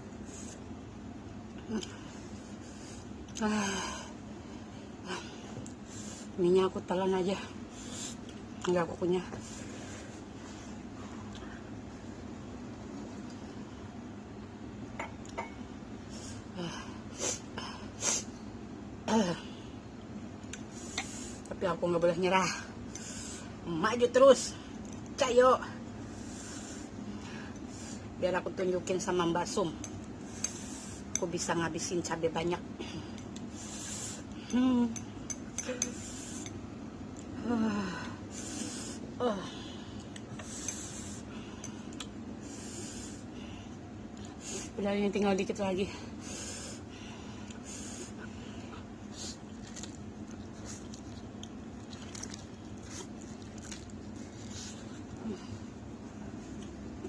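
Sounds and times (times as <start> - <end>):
woman moaning: 34.4 - 35.0, 37.4 - 38.2, 39.2 - 39.7.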